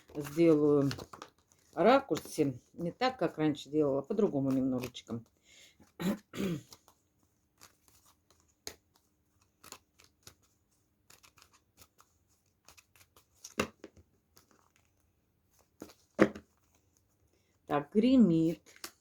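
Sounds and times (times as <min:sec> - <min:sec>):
cards clicking and snapping: 0:06.7 - 0:15.0, 0:18.6 - 0:19.0.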